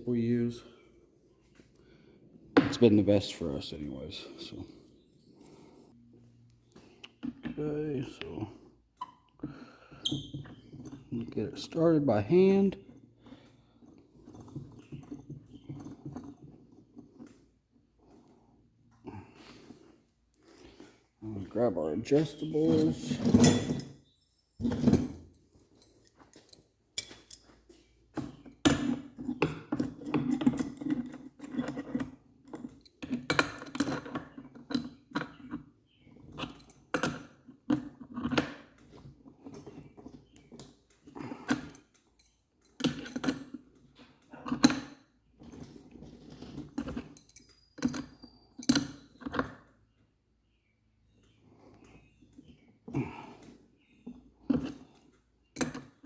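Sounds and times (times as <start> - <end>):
wrenches clinking on metal fitting: 22.1 - 35.6, 36.2 - 38.9, 39.5 - 43.8, 46.5 - 49.5.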